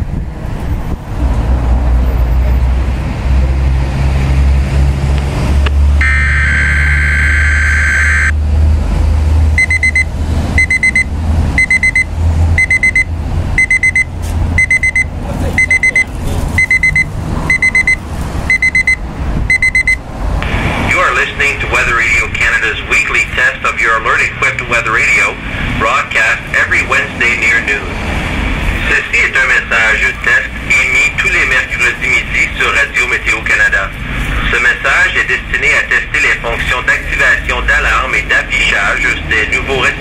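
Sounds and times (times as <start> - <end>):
low rumble of a car: 0.0 - 40.0
high electronic beeps: 6.0 - 8.4, 9.6 - 20.0
high warbling data tone: 6.0 - 8.4.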